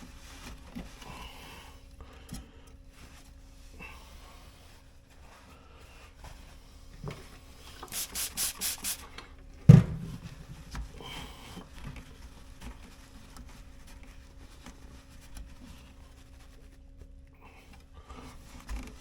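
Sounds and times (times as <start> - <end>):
brush scrubbing metal parts: 7.8 - 9.1.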